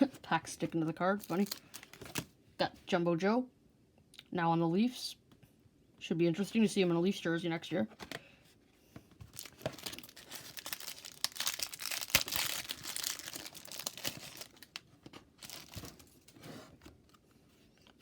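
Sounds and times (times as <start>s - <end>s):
wrapper crinkling and tearing: 1.2s - 2.3s, 9.2s - 16.3s.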